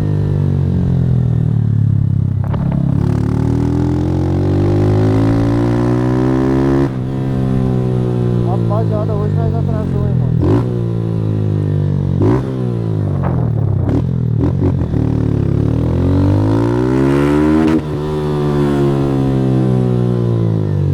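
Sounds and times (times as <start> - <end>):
motorcycle engine revving: 0.0 - 20.9
gear changes: 1.9 - 15.6.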